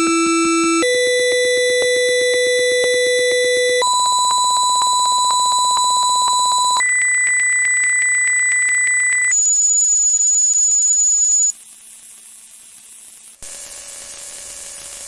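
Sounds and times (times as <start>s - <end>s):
pulsing test tones: 0.1s - 10.6s.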